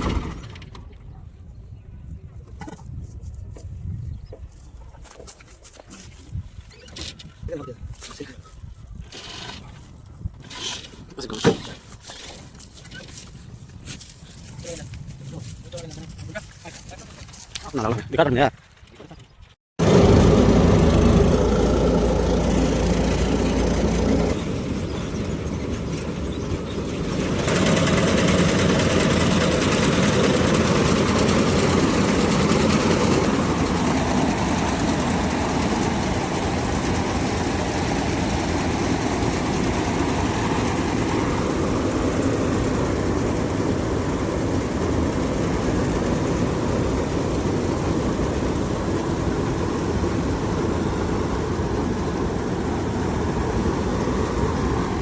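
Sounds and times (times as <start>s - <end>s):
combine harvester engine running: 19.8s - 55.0s.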